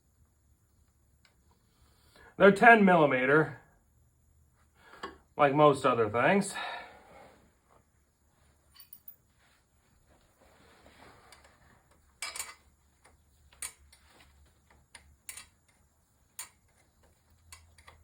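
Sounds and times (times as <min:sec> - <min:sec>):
hand tools clicking on metal: 0:14.7 - 0:18.0.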